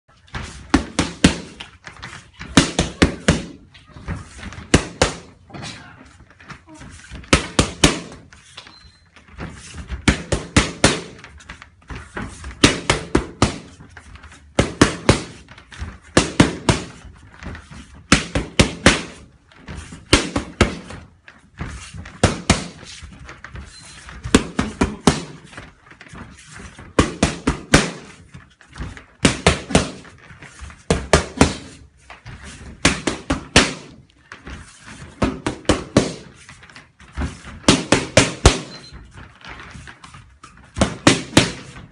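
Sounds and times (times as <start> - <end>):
punches on boxing pads: 0.6 - 1.6, 2.4 - 3.6, 4.6 - 5.4, 7.2 - 8.3, 10.0 - 11.2, 12.5 - 13.8, 14.5 - 17.0, 18.1 - 19.3, 20.0 - 21.0, 22.1 - 23.0, 24.2 - 25.5, 26.9 - 28.2, 29.2 - 30.1, 30.8 - 31.8, 32.7 - 34.0, 35.1 - 36.3, 37.5 - 38.8, 40.7 - 41.9.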